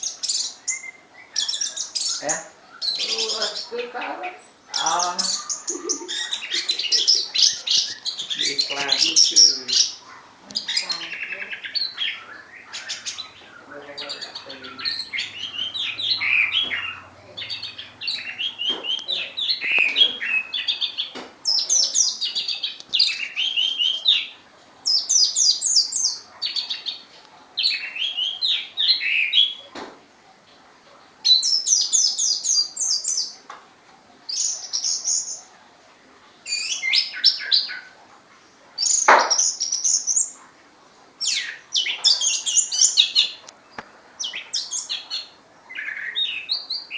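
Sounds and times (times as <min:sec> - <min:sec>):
sharp knock: 0:39.1 - 0:39.4.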